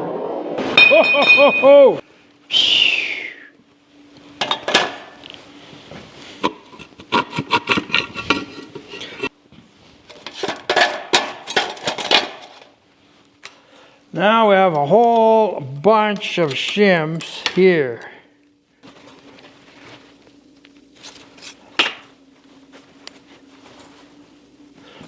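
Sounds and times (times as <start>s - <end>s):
brief falling whine: 0.0s - 4.2s
metal parts clinking and rattling: 4.4s - 5.1s, 10.1s - 12.7s.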